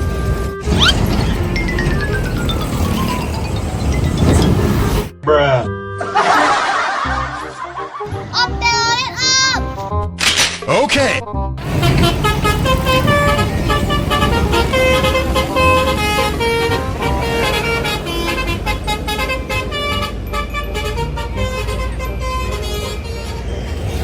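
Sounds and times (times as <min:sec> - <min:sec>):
bus engine rumble: 0:00.0 - 0:05.1, 0:11.6 - 0:24.0
bus horn playing a tune: 0:11.6 - 0:23.8.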